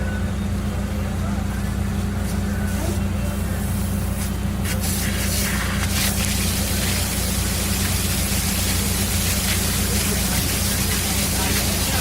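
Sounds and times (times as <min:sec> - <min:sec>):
low engine drone: 0:00.0 - 0:12.0
high pressure water jet hiss: 0:02.2 - 0:12.0.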